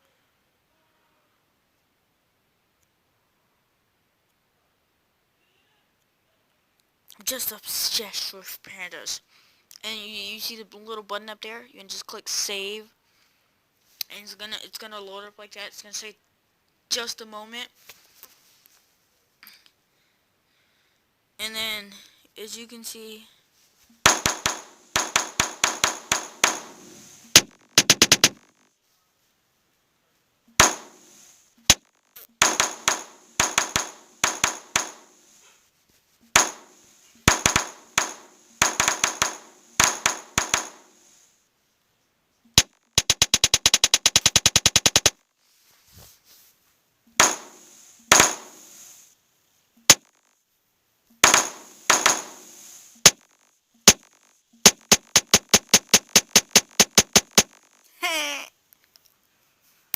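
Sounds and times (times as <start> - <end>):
keyboard typing clicks: 27.4 - 28.7, 42.6 - 45.2.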